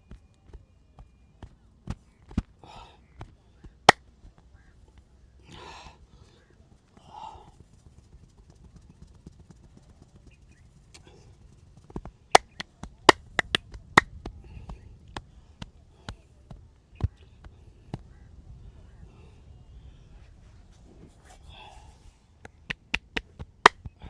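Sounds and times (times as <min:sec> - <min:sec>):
sharp massage smacks: 0:12.4 - 0:13.6, 0:22.7 - 0:23.2
soft pats and taps: 0:12.4 - 0:13.6, 0:22.5 - 0:23.2.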